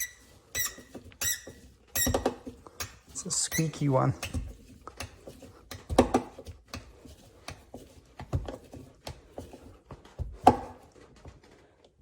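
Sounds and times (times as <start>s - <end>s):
screw squeaking into plastic panel: 0.0s - 4.4s.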